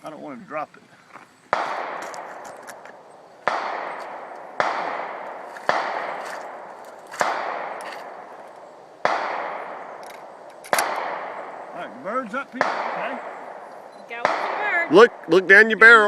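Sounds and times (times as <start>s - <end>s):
gunshots with echo: 1.5s - 2.5s, 3.4s - 8.4s, 9.0s - 15.4s.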